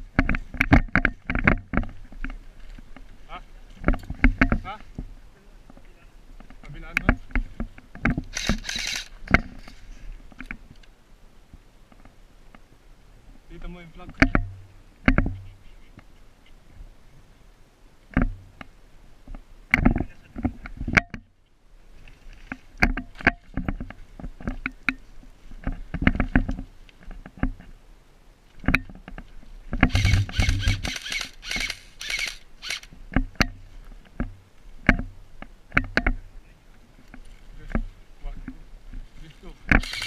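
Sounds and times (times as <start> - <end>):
gear knocking and rustling: 28.6 - 36.2, 37.1 - 40.0
dense rattling burst: 29.9 - 32.9.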